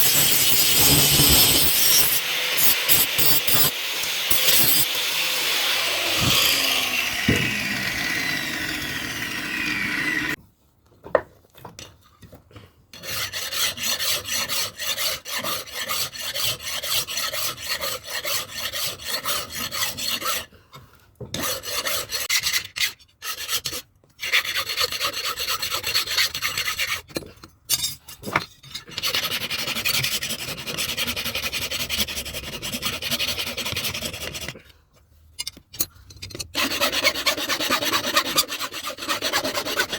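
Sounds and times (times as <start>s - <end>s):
hand file rasping on steel: 0.0s - 5.2s, 13.0s - 20.5s, 21.4s - 27.2s, 28.9s - 34.6s, 36.6s - 39.9s.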